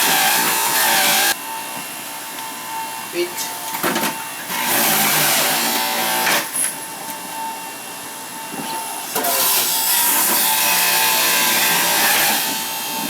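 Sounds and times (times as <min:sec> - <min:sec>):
electric juicer motor whining: 0:00.0 - 0:01.7, 0:04.4 - 0:13.0.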